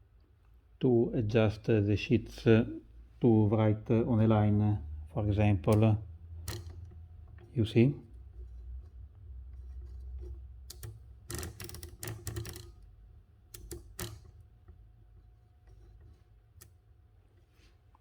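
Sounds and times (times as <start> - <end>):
typewriter mechanism clicks and rattles: 5.7 - 7.5, 10.2 - 14.8.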